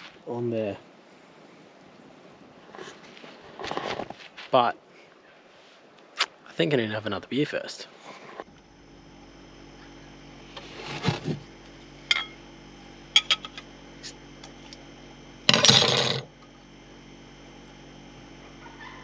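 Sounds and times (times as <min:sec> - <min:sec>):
low hum: 0:08.0 - 0:19.0
glass clinks and clicks: 0:12.1 - 0:12.4, 0:13.2 - 0:13.6.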